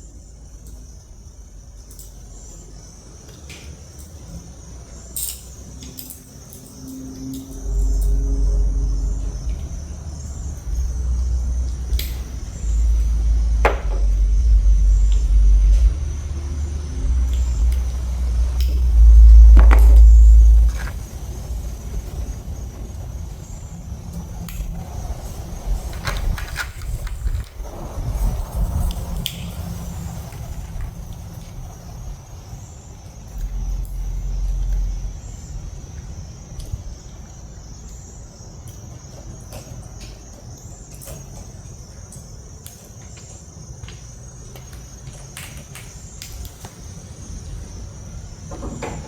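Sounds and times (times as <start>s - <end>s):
high insect trill: 0.0s - 49.0s
low rumble: 7.0s - 37.8s
faint clicks: 10.4s - 21.0s.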